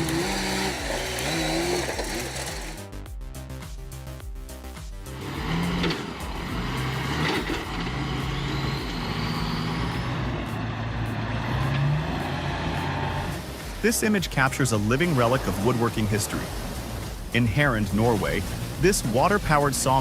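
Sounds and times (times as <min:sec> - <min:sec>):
heavy machine engine running: 0:00.0 - 0:02.8, 0:05.0 - 0:20.0.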